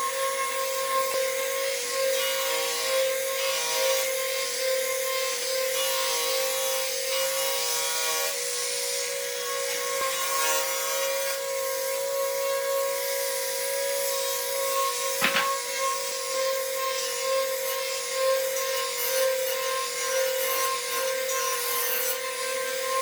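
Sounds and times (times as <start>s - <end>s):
sharp knock: 15.2s - 15.6s.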